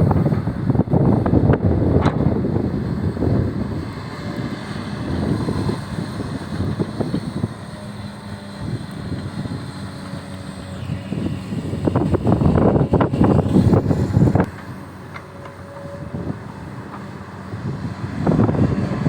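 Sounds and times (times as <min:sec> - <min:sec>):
excavator diesel engine running: 0:00.0 - 0:19.0
wind buffeting microphone: 0:00.0 - 0:19.0.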